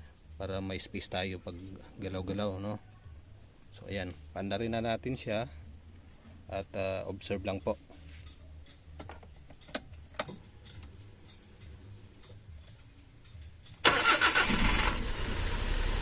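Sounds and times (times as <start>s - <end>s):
car engine starting and idling roughly: 13.8s - 16.0s.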